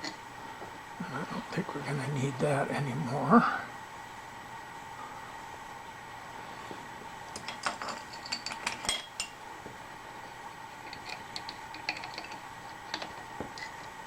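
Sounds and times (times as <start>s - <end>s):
faint machine hum: 0.0s - 14.0s
metal tools clinking and rattling: 7.4s - 9.4s.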